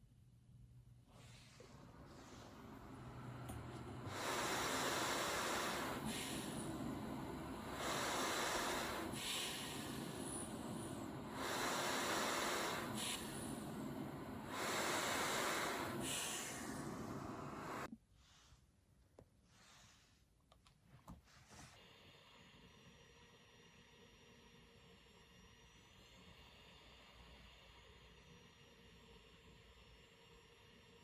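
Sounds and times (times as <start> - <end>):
cpap machine airy hiss: 1.1 - 17.9.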